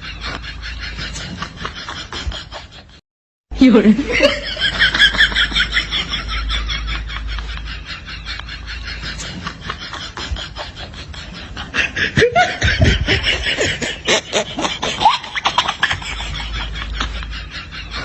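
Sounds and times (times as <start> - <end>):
person laughing: 3.8 - 18.0.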